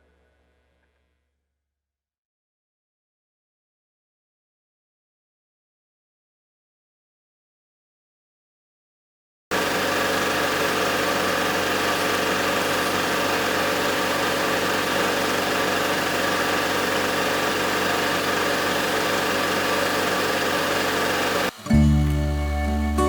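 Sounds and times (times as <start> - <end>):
belt sander running: 9.5 - 22.8.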